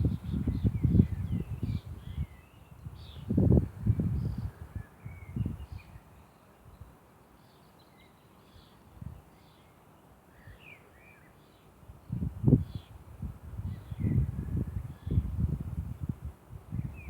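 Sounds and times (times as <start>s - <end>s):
small birds chirping: 0.0s - 9.8s.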